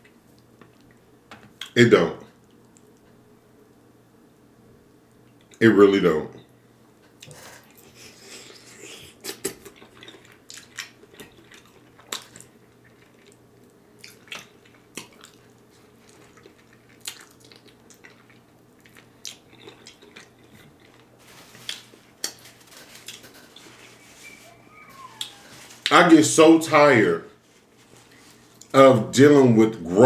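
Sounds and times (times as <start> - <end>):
wet chewing and lip smacks: 7.1 - 22.4.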